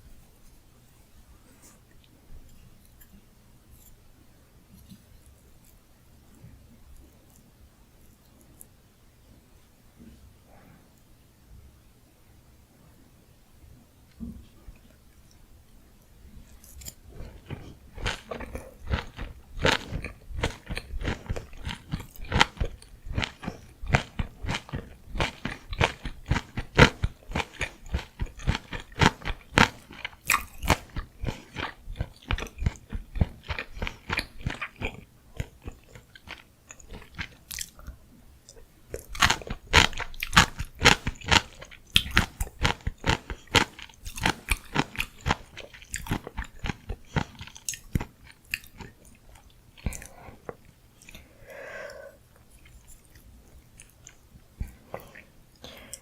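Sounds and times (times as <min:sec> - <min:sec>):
crunchy wet chewing: 0:16.4 - 0:56.0.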